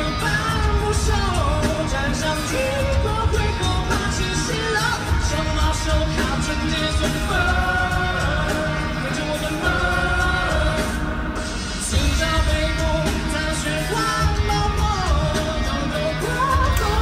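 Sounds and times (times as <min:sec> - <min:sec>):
male singer: 0:00.0 - 0:17.0
pop-rock band with driving beat: 0:00.0 - 0:17.0.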